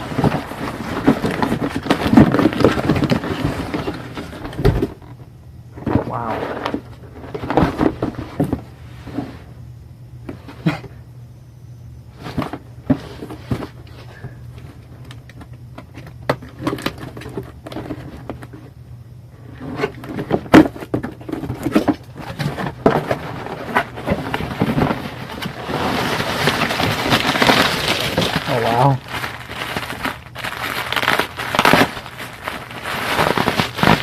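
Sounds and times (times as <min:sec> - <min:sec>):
packaging being unwrapped: 0:23.4 - 0:34.0.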